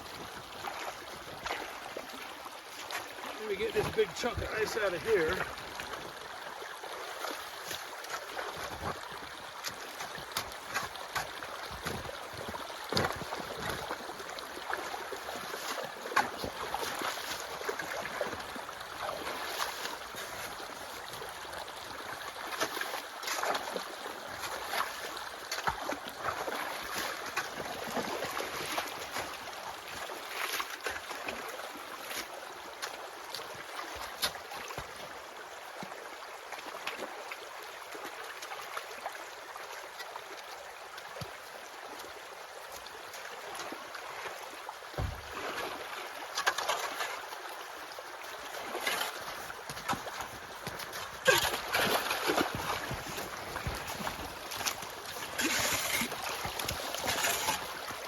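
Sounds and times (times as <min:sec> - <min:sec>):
water rushing along a ditch: 0:00.0 - 0:58.0
ice chunks knocking and scraping: 0:55.2 - 0:57.7.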